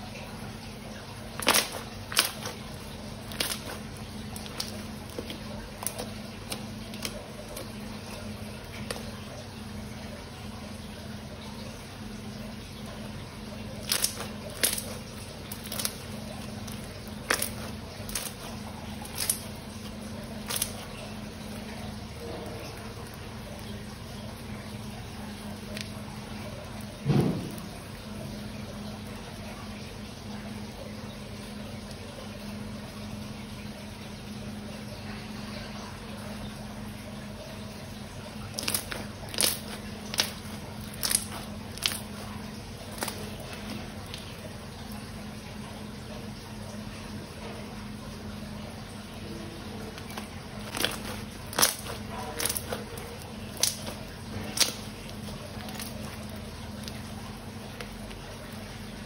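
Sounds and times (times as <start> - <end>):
steady low hum: 0.0 - 59.0
slime crackling: 1.2 - 9.5, 13.4 - 22.0, 38.3 - 44.4, 49.6 - 59.0.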